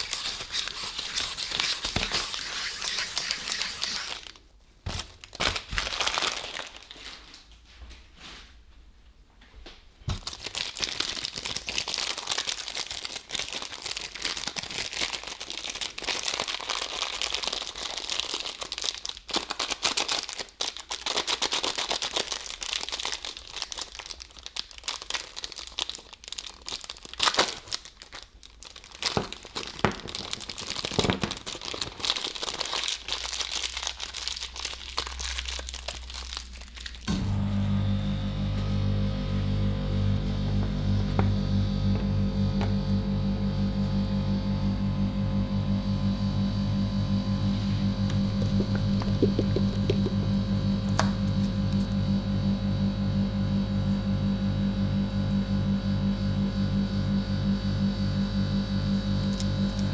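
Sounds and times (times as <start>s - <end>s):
plastic packaging crinkling: 0.0s - 8.3s, 10.1s - 37.2s, 47.8s - 52.0s.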